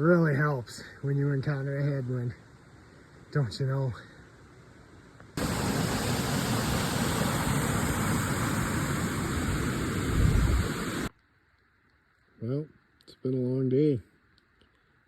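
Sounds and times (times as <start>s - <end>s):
wind blowing on microphone: 5.4s - 11.1s.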